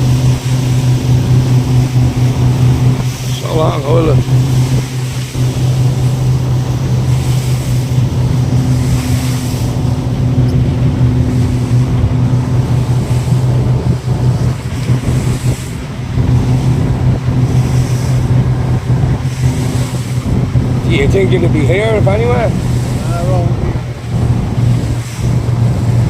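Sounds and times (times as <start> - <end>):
boat motor running: 0.0 - 26.0
water rushing past hull: 0.0 - 26.0
wind buffeting microphone: 0.0 - 26.0.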